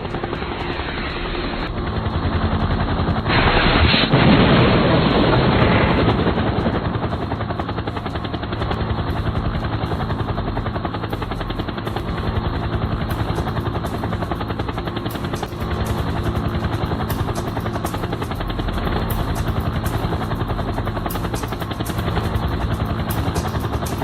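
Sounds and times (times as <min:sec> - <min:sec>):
rushing swell: 0:00.0 - 0:01.7
motor running with pulsing beat: 0:00.0 - 0:24.0.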